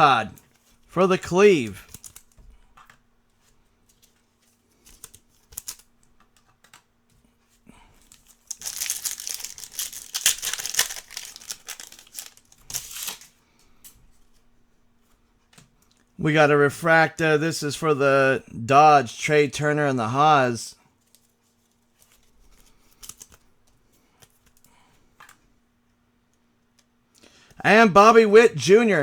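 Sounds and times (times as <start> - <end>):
faint steady hum: 0.0 - 29.0
cards clicking: 1.6 - 3.0, 3.9 - 6.9
foil wrapper crinkling and tearing: 4.7 - 5.9, 8.0 - 13.4, 21.1 - 23.5.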